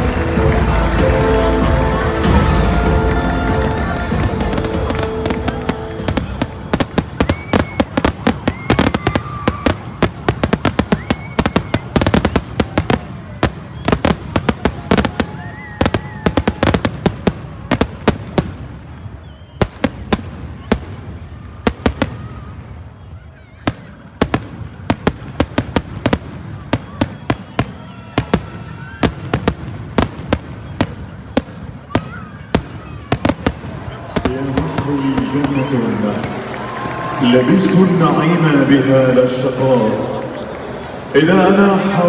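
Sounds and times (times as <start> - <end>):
music: 0.0 - 7.3
fireworks bangs and crackles: 0.0 - 42.0.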